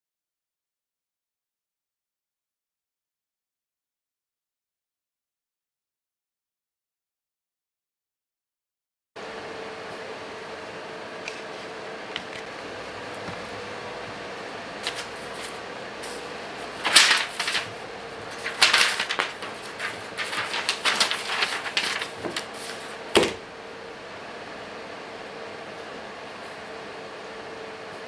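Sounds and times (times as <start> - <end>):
steady hum: 9.2 - 27.9.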